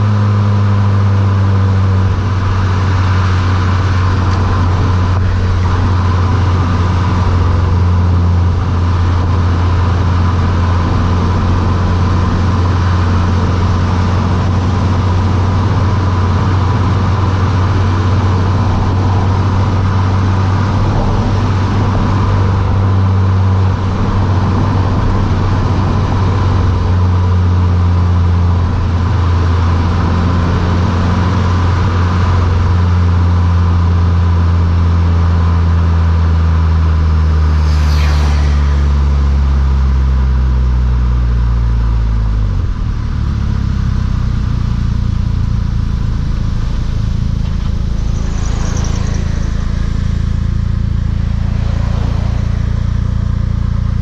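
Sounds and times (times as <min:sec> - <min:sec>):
car exhaust deep drone: 0:00.0 - 0:54.0
whooshing sweeps: 0:36.9 - 0:40.3, 0:46.4 - 0:54.0.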